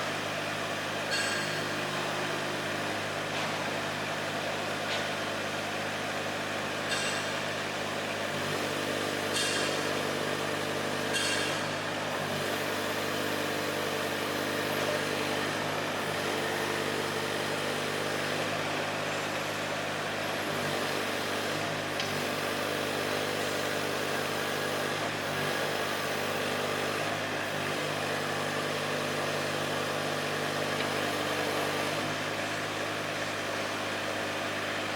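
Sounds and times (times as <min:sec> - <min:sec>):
sharp metallic clanks: 0:01.1 - 0:01.8, 0:06.9 - 0:07.4.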